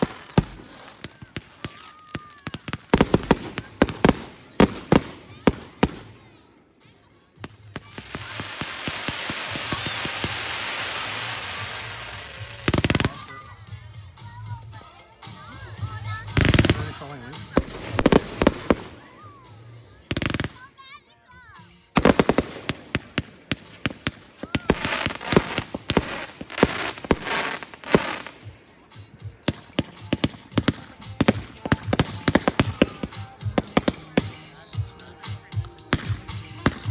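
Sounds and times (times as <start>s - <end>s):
firework whistle: 0.0s - 6.1s, 8.0s - 13.3s
firework bangs: 0.0s - 6.4s, 7.4s - 13.4s, 16.3s - 20.7s, 22.0s - 36.9s.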